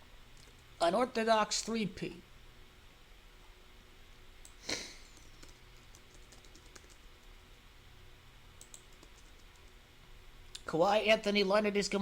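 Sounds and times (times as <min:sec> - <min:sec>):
computer keyboard clicks: 0:05.2 - 0:07.1, 0:08.6 - 0:09.7.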